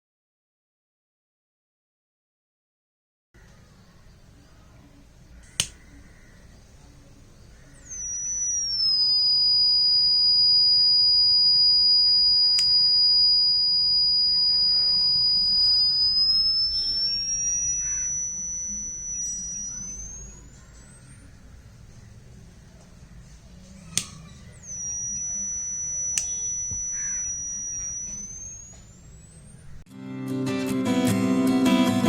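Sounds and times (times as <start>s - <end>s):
sharp click: 5.4s - 6.3s, 7.6s - 22.9s, 23.6s - 29.8s
fire alarm buzzer shrill tone: 7.7s - 22.3s, 23.8s - 29.7s.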